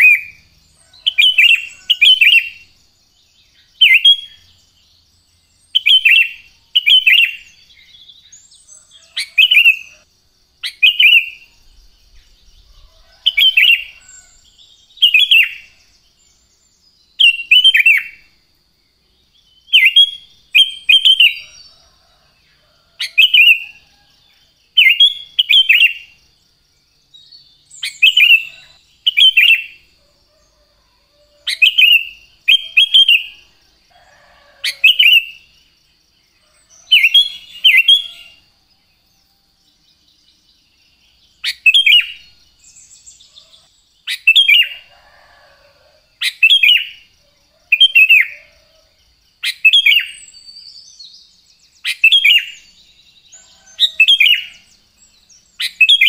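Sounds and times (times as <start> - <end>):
bird whistling song: 0.0 - 0.4, 3.5 - 4.6, 5.6 - 10.0, 10.6 - 15.9, 17.1 - 18.2, 19.6 - 21.7, 24.8 - 26.2, 27.3 - 29.8, 31.4 - 33.5, 34.6 - 35.4, 36.8 - 38.4, 41.4 - 44.9, 46.2 - 47.0, 49.4 - 51.1, 51.8 - 52.7, 55.6 - 56.0.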